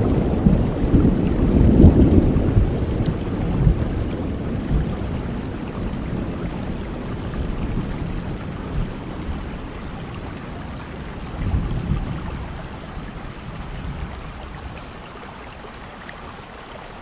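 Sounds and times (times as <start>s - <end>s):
steady rainfall: 0.0s - 17.0s.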